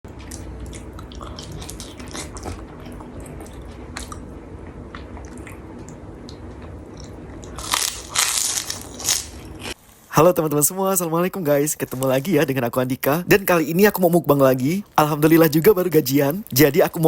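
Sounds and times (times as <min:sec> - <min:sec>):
person chewing food: 0:00.1 - 0:09.8
low steady hum: 0:00.1 - 0:17.0.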